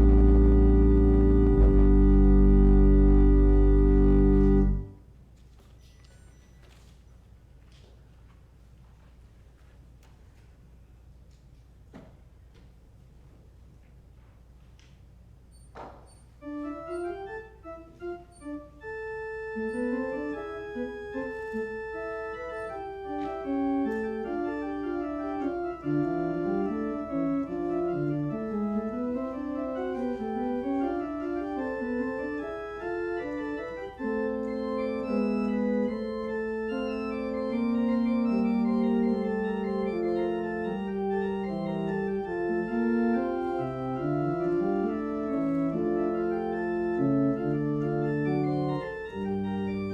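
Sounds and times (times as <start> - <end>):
organ playing slow piece: 0.0 - 5.0, 16.4 - 49.9.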